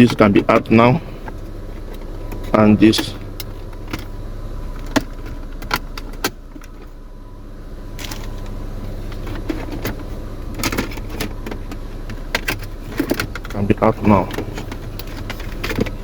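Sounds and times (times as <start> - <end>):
steady low hum: 0.0 - 16.0
plastic and metal parts clicking: 9.2 - 16.0.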